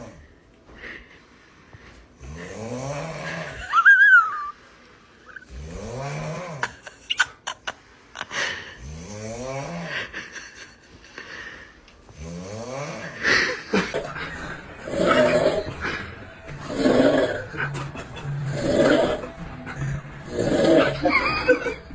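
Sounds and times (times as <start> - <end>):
person snoring: 0.0 - 0.3, 2.2 - 4.5, 5.3 - 7.0, 8.2 - 10.6, 11.2 - 21.9.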